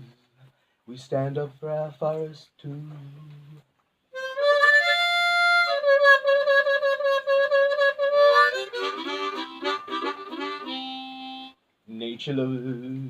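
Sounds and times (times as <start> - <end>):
harmonica playing: 4.1 - 11.6.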